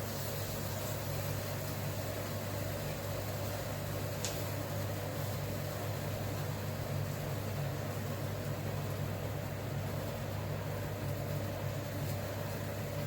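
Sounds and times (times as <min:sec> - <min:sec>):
household appliance humming: 0:00.0 - 0:13.0.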